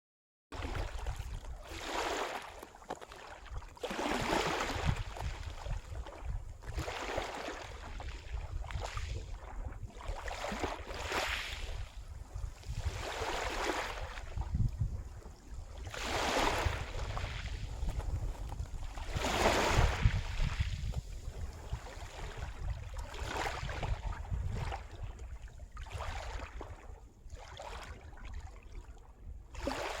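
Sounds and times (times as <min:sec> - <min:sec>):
wind rumble on microphone: 0:00.6 - 0:02.0, 0:03.4 - 0:30.0
sea waves washing ashore: 0:00.6 - 0:06.0, 0:09.6 - 0:14.5, 0:15.2 - 0:23.8.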